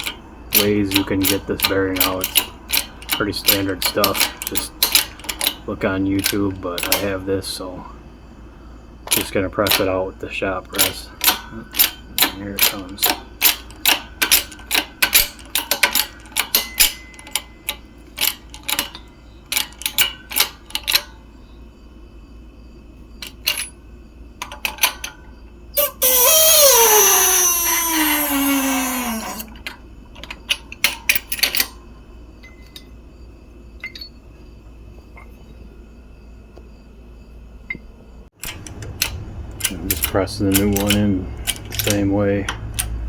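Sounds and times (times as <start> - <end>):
shop press clicking: 0.0 - 7.2, 10.7 - 21.2, 38.4 - 43.0
loud falling-pitch screech: 25.8 - 29.5.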